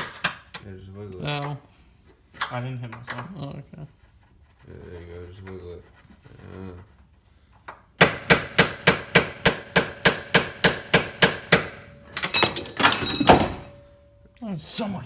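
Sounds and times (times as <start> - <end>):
hammer striking metal: 8.0 - 14.2
clattering metallic hits: 10.7 - 14.3.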